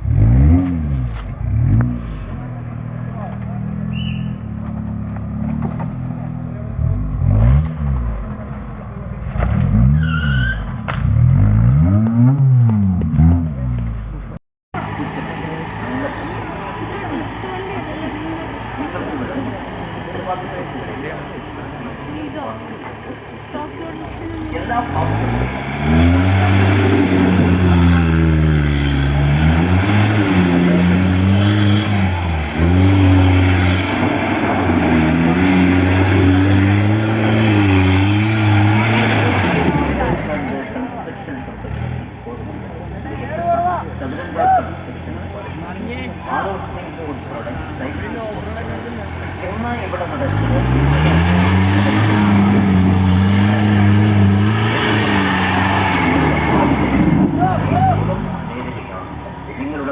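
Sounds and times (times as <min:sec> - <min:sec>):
engine revving: 0:00.0 - 0:08.6, 0:09.2 - 0:43.5, 0:45.3 - 0:59.9
brief high squeal: 0:03.9 - 0:04.5.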